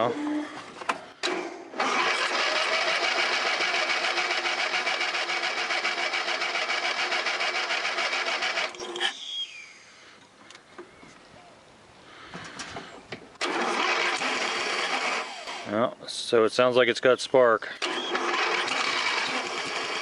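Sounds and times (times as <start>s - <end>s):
starter cranking engine: 1.2s - 9.0s, 13.4s - 15.7s, 17.8s - 20.0s.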